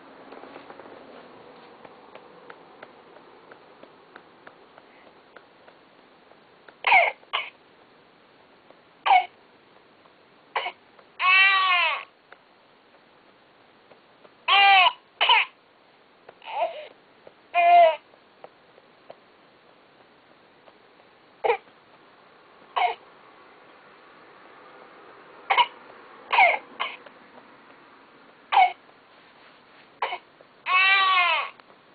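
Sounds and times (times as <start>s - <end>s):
doll baby coughs: 6.9s - 7.6s, 9.0s - 9.4s, 15.2s - 15.6s, 22.8s - 23.0s, 26.3s - 27.0s, 28.6s - 28.8s
doll baby crying: 11.2s - 12.1s, 14.5s - 15.0s, 17.6s - 18.0s, 30.7s - 31.6s.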